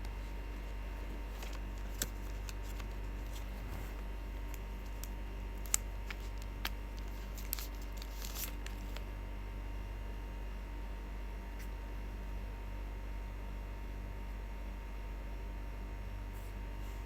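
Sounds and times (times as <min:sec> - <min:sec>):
steady low hum: 0:00.0 - 0:17.0
clicks and taps of packaging: 0:01.3 - 0:03.5, 0:04.5 - 0:09.0.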